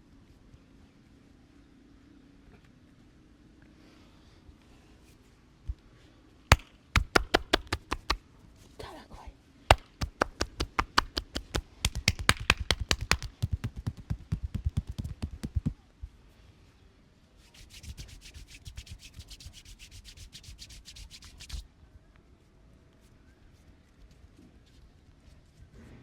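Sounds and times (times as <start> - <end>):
hands slapping body in massage: 6.5 - 8.2, 9.7 - 15.8, 17.6 - 21.6.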